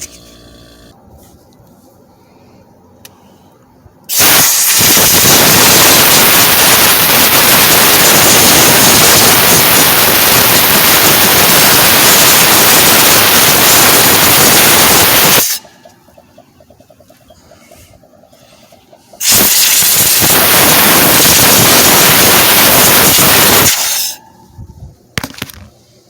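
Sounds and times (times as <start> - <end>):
compressed air blast hissing: 4.1 - 15.8, 17.5 - 24.2.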